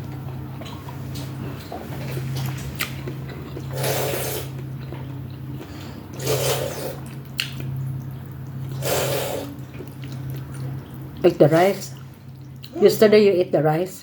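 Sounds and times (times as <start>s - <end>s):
wet noodle slurps: 3.7s - 4.6s, 6.2s - 7.2s, 8.7s - 9.6s.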